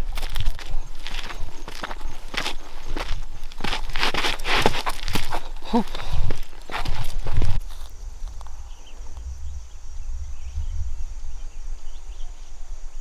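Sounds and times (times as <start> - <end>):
high insect drone: 0.0 - 13.0
wind rumble on microphone: 6.1 - 13.0.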